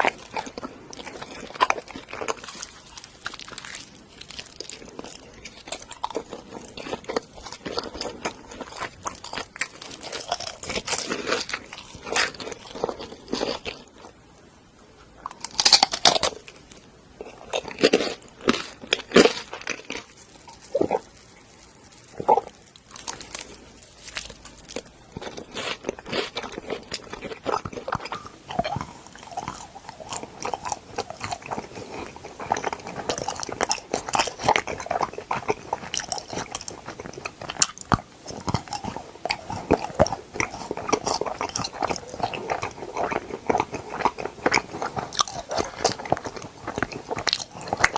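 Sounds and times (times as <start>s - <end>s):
crisp bites and crunches: 0.0s - 13.9s, 15.3s - 16.6s, 17.2s - 47.9s
mouth chewing noises: 0.0s - 14.2s, 15.2s - 47.9s.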